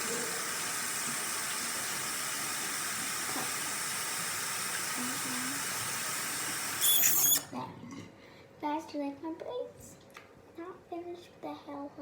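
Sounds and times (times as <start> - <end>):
water running from a tap: 0.0 - 7.4.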